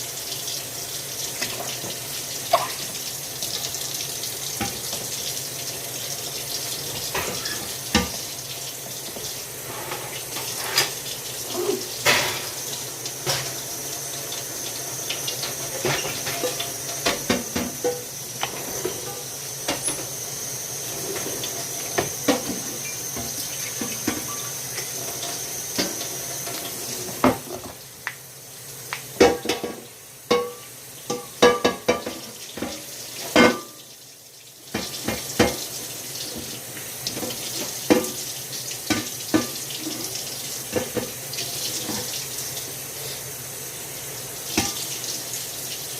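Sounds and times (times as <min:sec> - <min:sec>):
tap running into sink: 0:04.6 - 0:05.2, 0:06.9 - 0:08.3, 0:15.1 - 0:20.2, 0:21.1 - 0:28.2, 0:28.9 - 0:33.7, 0:34.7 - 0:38.3, 0:38.9 - 0:42.3, 0:44.5 - 0:45.0
dishes clinking: 0:07.1 - 0:08.2, 0:22.2 - 0:25.9, 0:29.2 - 0:33.8.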